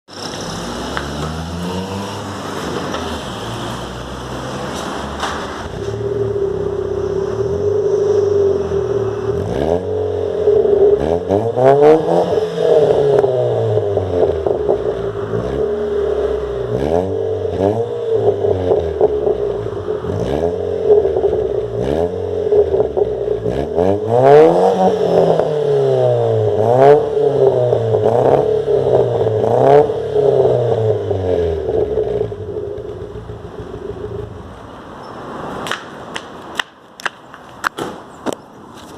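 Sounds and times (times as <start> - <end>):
car engine revving: 0.0 - 35.5.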